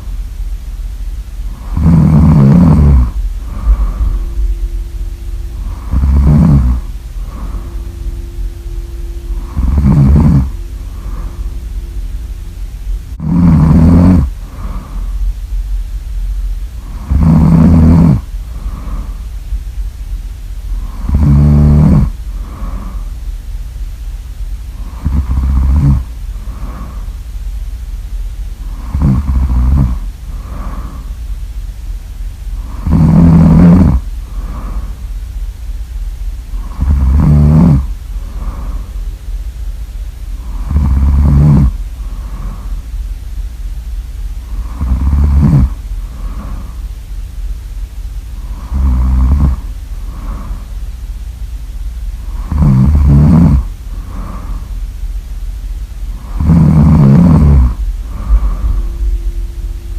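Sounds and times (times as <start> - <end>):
low steady hum: 0.0 - 59.9
loud rasping snoring: 1.5 - 15.3, 16.8 - 19.3, 20.7 - 23.1, 24.8 - 27.2, 28.6 - 31.2, 32.6 - 35.0, 36.5 - 39.0, 40.4 - 42.8, 44.4 - 46.8, 48.4 - 50.8, 52.2 - 54.8, 56.1 - 59.5
faint breath out: 3.4 - 12.0, 53.9 - 54.9, 57.8 - 59.9.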